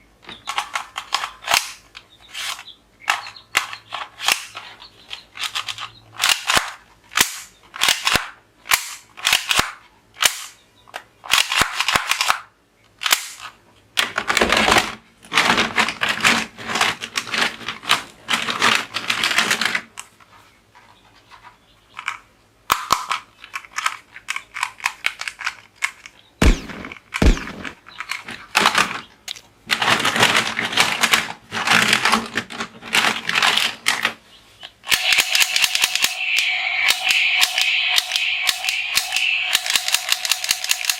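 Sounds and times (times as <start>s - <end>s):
toy guns firing: 6.2s - 10.6s, 11.3s - 13.5s, 26.4s - 27.8s, 34.8s - 40.9s.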